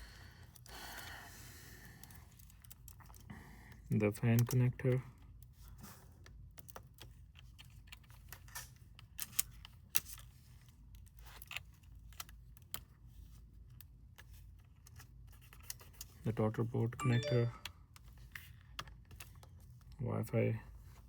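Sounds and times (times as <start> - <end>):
small clicks and taps: 4.3 - 4.7.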